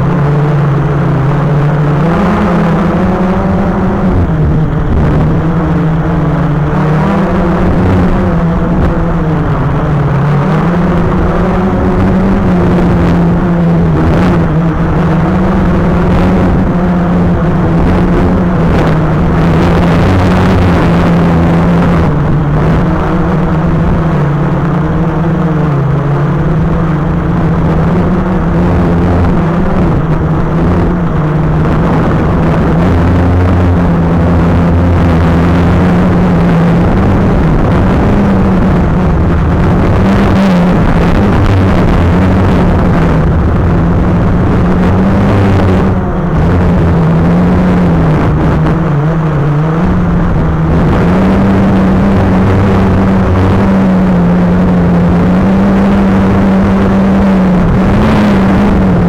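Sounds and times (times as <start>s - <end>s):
drone propellers whirring: 0.0s - 59.0s.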